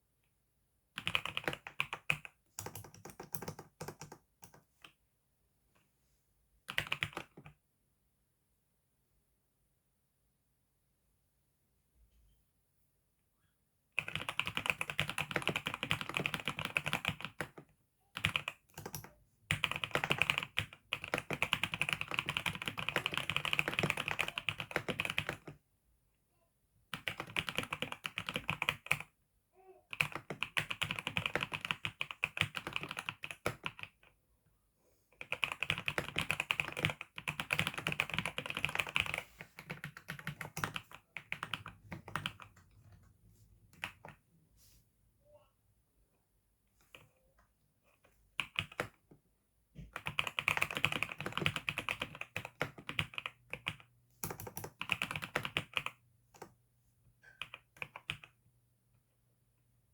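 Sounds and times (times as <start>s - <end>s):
typing on computer keyboard: 1.0s - 5.0s, 6.7s - 7.6s, 14.0s - 25.6s, 26.9s - 29.1s, 29.9s - 34.1s, 35.2s - 43.1s, 43.7s - 44.2s, 48.0s - 49.1s, 49.8s - 56.6s, 57.2s - 58.4s.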